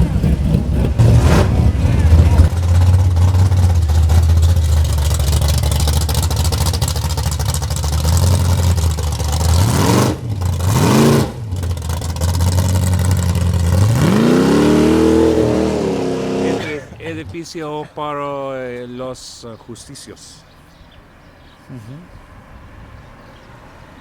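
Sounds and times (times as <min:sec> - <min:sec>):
car engine idling and revving: 0:00.0 - 0:17.7.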